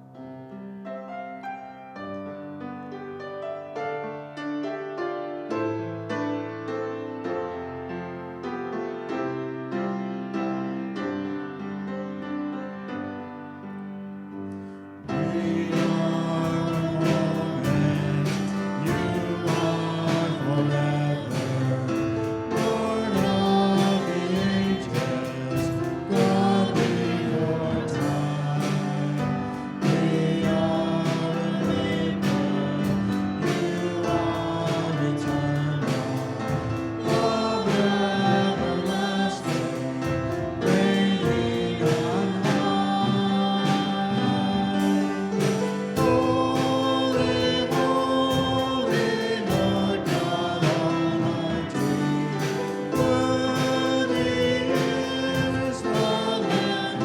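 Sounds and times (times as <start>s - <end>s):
band with singing: 14.6s - 57.0s.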